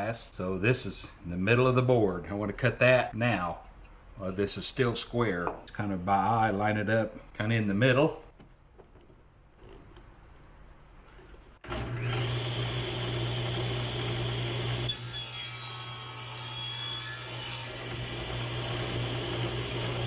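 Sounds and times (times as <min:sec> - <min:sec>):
table saw motor hum: 0:11.6 - 0:16.5, 0:17.5 - 0:20.0.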